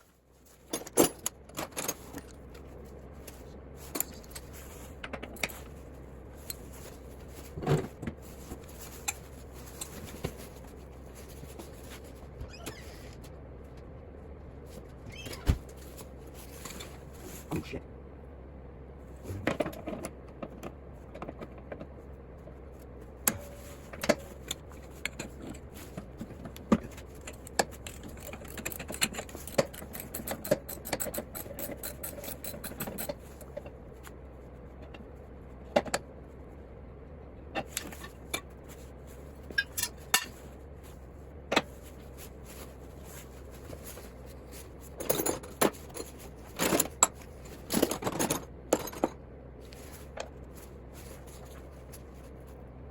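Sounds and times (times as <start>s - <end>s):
steady low hum: 0.0s - 52.9s
metal tools clinking: 39.4s - 40.5s, 44.0s - 49.2s.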